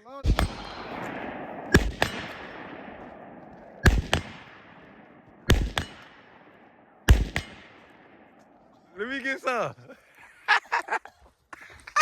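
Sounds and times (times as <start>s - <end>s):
gunshots: 0.2s - 8.7s
quieter crack with echo: 0.2s - 8.9s.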